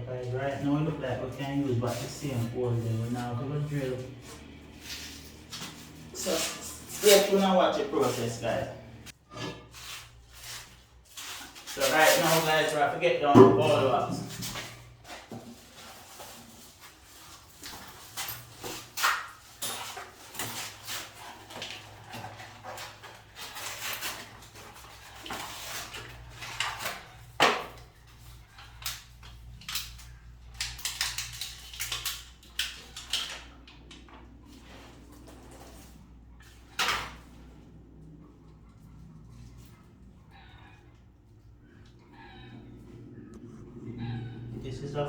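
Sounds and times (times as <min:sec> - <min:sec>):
faint low hum: 0:28.0 - 0:45.0.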